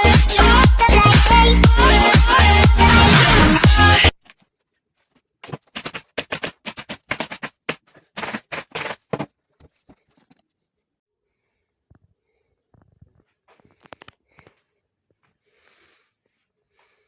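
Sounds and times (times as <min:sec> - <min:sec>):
dance music with steady beat: 0:00.0 - 0:04.1
short sharp scratchy sounds: 0:05.4 - 0:09.3.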